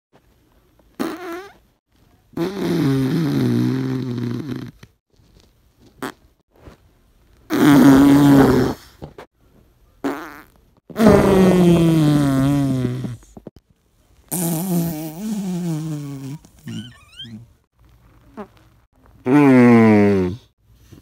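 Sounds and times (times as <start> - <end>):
fart sounds: 0.9 - 1.6, 2.4 - 4.9, 6.0 - 6.2, 7.5 - 8.9, 10.0 - 13.6, 14.3 - 17.5, 18.2 - 20.6.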